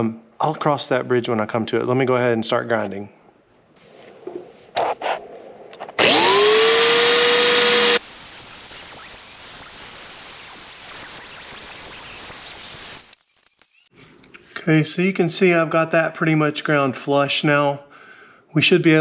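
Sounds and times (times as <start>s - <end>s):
belt sander motor whining: 6.0s - 13.9s.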